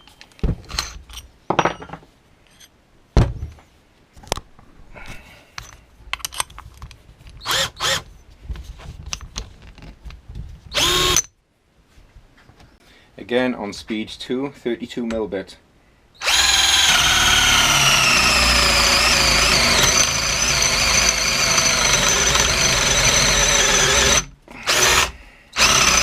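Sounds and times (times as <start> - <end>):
cordless drill motor bursts: 7.4 - 8.0, 10.8 - 11.2, 16.2 - 26.0.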